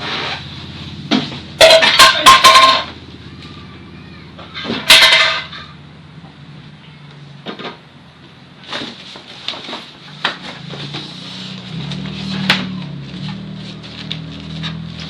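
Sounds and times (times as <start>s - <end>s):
parts knocking and clattering: 0.9s - 3.1s, 4.4s - 6.4s, 7.4s - 7.9s, 8.6s - 13.6s.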